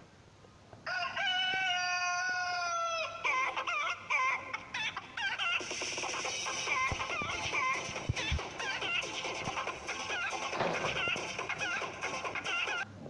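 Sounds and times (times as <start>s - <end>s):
rooster crowing: 0.8s - 3.5s
short clucking calls: 3.3s - 12.9s.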